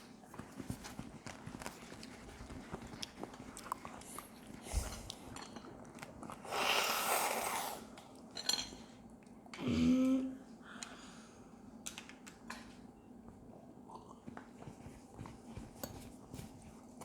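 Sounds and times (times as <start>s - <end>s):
chewing and biting: 1.6s - 6.4s.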